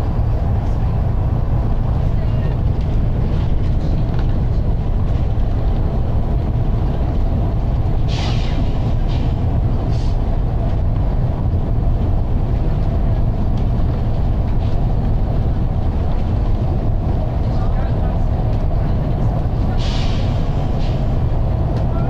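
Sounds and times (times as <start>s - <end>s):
bus engine and road drone: 0.0s - 22.0s
compressed air hiss: 8.1s - 9.2s.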